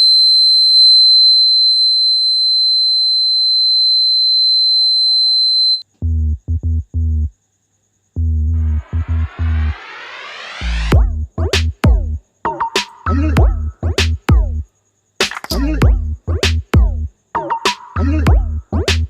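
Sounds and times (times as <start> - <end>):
electronic music bass notes: 6.0 - 7.3, 8.2 - 14.6, 15.5 - 19.0.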